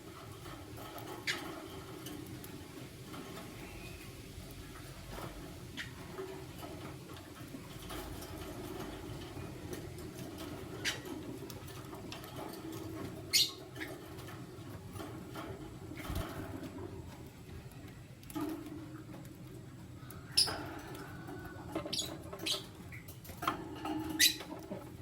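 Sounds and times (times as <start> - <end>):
lovebirds chirping: 13.3 - 13.8, 24.1 - 24.5.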